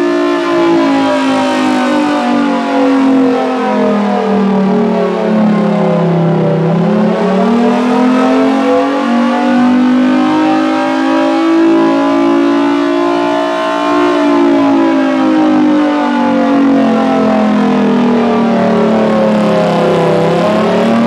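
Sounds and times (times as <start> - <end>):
mechanical warning siren: 0.0 - 21.0.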